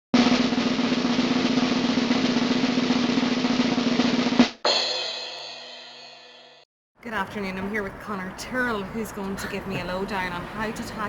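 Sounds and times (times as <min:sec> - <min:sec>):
snare drum roll: 0:00.1 - 0:05.4
cymbal crash: 0:00.2 - 0:06.7.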